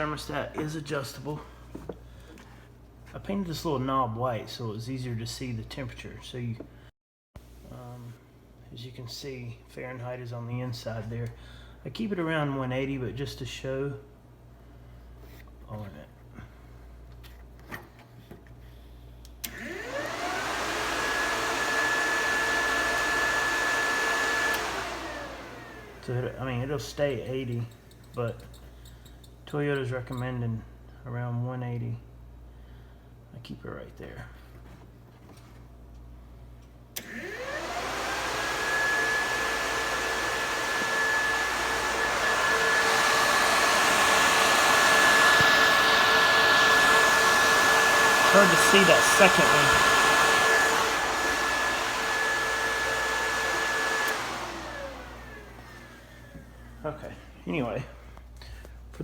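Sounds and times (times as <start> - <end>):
electric fans whirring: 19.4 - 28.6, 37.0 - 58.7.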